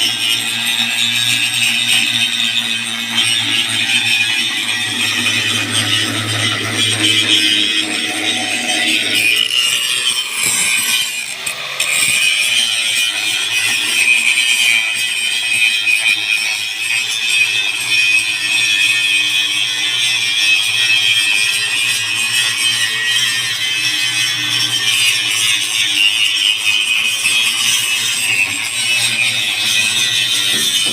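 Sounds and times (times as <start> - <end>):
angle grinder grinding metal: 0.0 - 30.9.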